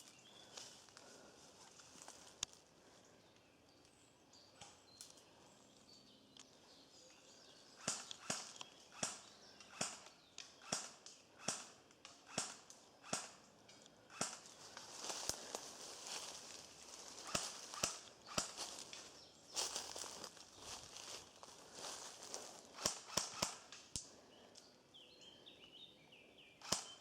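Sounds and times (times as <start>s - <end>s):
sharp click: 7.8s - 13.3s, 14.1s - 14.4s, 26.6s - 27.0s
leaves rustling: 14.4s - 23.2s
footsteps crunching through leaves: 14.6s - 22.8s.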